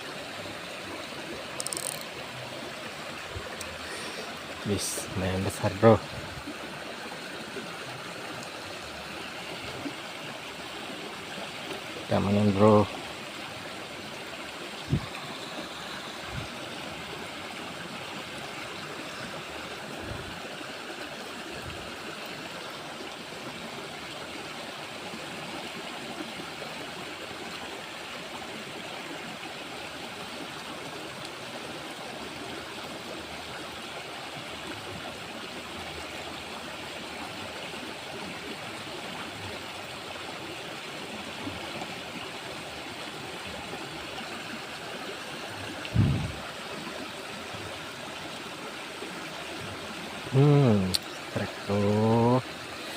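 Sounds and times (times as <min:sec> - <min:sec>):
stream water flowing: 0:00.0 - 0:52.9
faint low thumps: 0:45.9 - 0:46.4.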